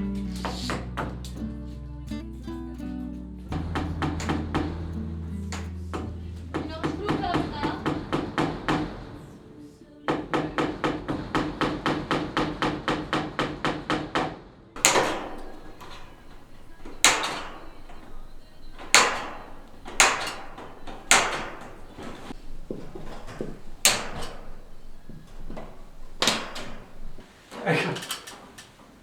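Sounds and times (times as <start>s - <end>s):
fast knocking on wood: 3.6s - 4.9s, 14.8s - 27.3s
hammer blows: 14.8s - 27.3s.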